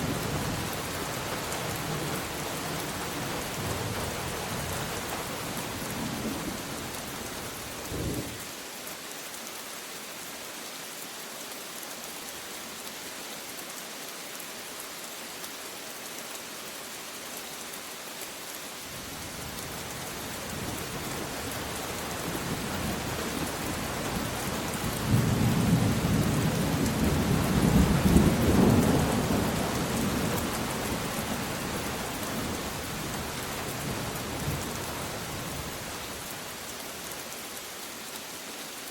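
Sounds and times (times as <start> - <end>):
rain falling: 0.0 - 38.9.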